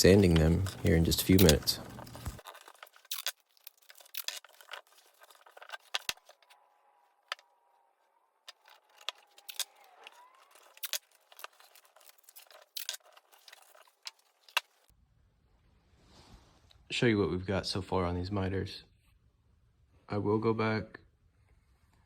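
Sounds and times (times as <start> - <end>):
tape being pulled and torn: 0.0 - 6.6.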